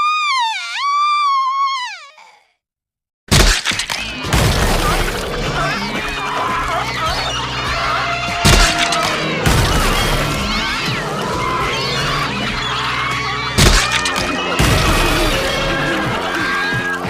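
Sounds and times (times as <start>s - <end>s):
loud crashing hits: 3.3s - 16.5s
sliding chirping tones: 3.8s - 17.0s
background music: 4.1s - 17.0s.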